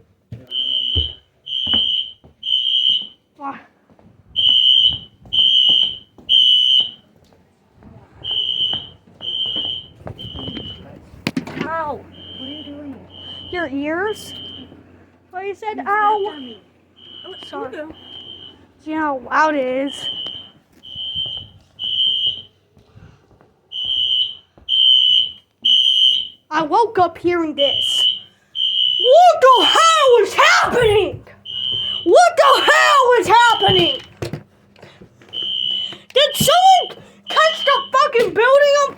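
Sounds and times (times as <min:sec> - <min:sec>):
fire alarm horn blasts: 0:00.5 - 0:03.3, 0:04.4 - 0:07.1, 0:08.2 - 0:11.0, 0:11.9 - 0:15.0, 0:15.8 - 0:18.8, 0:19.8 - 0:22.6, 0:23.7 - 0:26.6, 0:27.6 - 0:34.3, 0:35.3 - 0:38.9.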